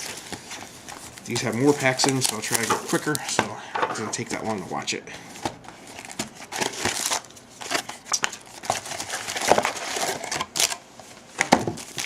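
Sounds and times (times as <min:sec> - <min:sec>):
plastic wrapping crinkling and tearing: 0:00.0 - 0:03.4, 0:05.8 - 0:12.0.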